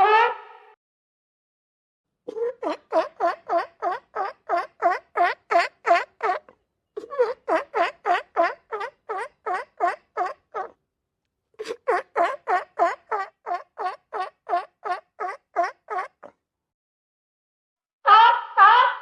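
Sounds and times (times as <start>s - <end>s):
sea lion barking: 2.3s - 10.8s.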